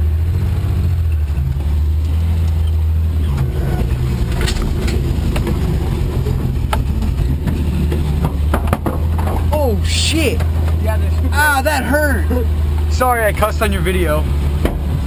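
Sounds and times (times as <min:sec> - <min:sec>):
truck engine running: 0:00.0 - 0:15.0
truck body knocking and rattling: 0:03.2 - 0:11.7, 0:14.3 - 0:15.0.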